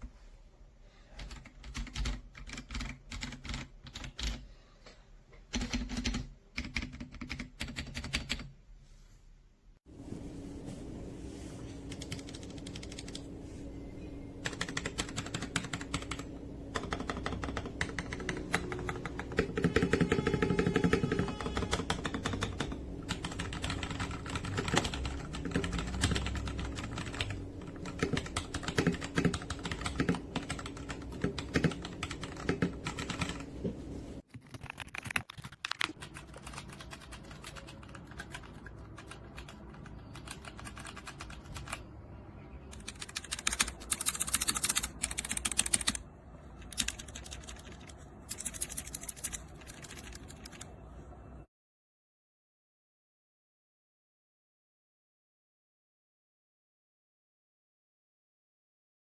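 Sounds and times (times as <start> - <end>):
typing on mechanical keyboard: 1.2 - 4.4, 5.5 - 8.5, 11.8 - 13.3, 14.4 - 33.7, 34.3 - 41.9, 42.7 - 46.0, 46.6 - 50.7.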